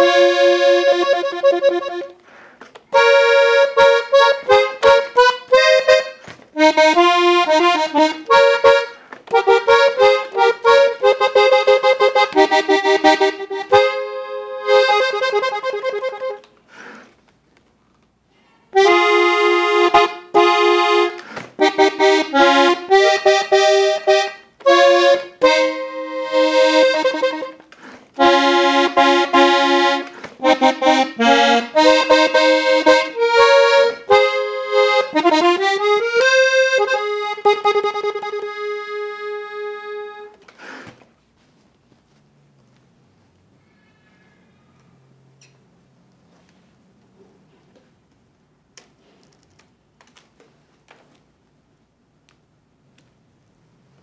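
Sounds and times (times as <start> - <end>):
accordion playing runs and chords: 0.0 - 16.5, 18.8 - 40.4.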